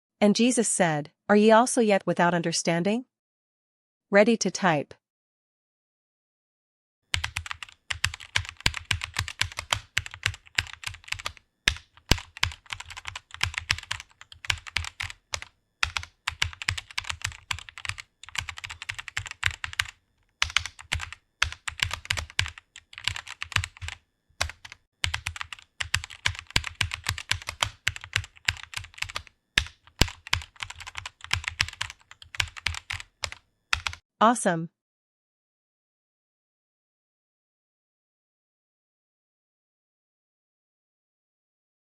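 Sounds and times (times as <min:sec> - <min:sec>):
fast typing on keyboard: 0:07.1 - 0:34.0.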